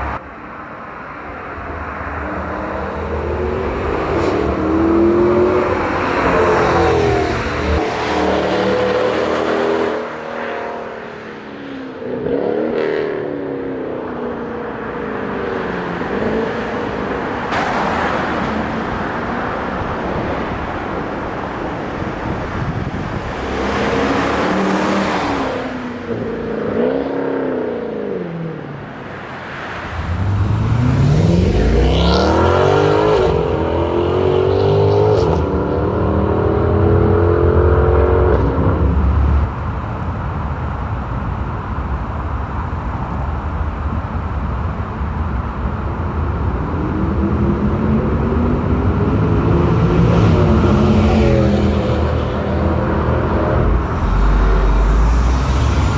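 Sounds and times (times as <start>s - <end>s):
car engine revving: 1.2s - 10.8s, 29.8s - 44.4s, 46.8s - 55.9s.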